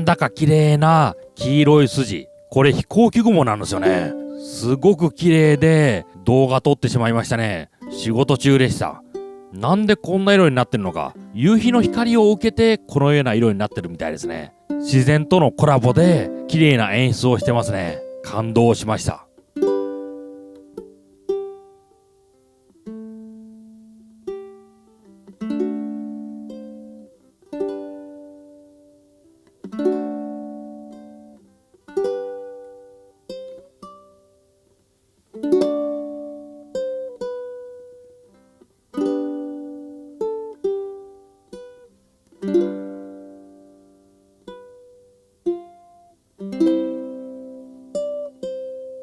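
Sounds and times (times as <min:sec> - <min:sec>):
plucked string chords: 0:00.0 - 0:22.1, 0:35.3 - 0:49.0.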